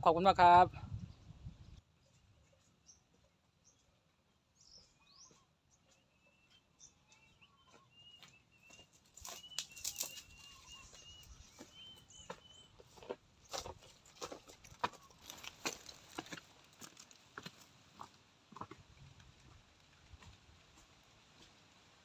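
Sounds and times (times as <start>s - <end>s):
faint short bird chirps: 6.1s - 12.7s.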